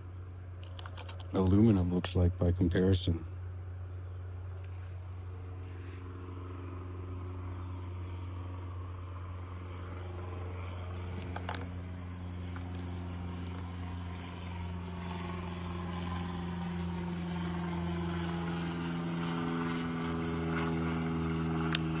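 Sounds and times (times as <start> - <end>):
low mechanical engine drone: 0.0 - 22.0
light clicks: 0.6 - 1.4, 11.1 - 11.7.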